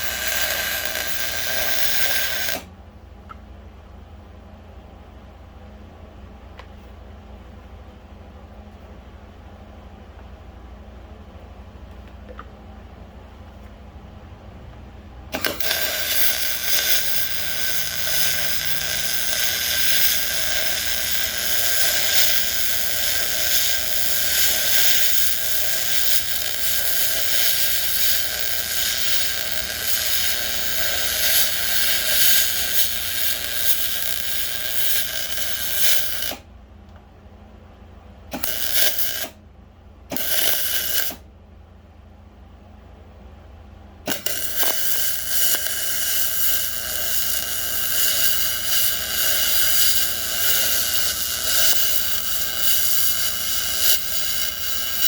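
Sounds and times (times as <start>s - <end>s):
small gear motor whining: 15.4s - 36.4s, 44.1s - 55.0s.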